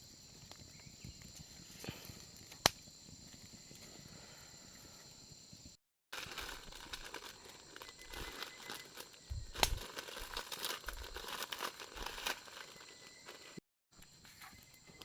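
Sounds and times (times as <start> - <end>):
dry rustling and crinkling: 6.1 - 13.6.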